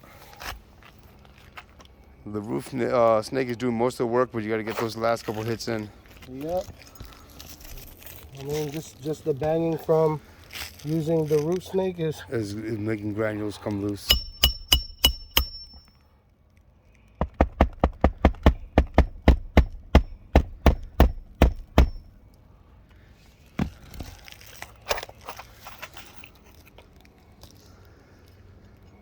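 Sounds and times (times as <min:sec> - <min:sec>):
hammer striking metal: 0:14.1 - 0:15.9, 0:17.5 - 0:22.0.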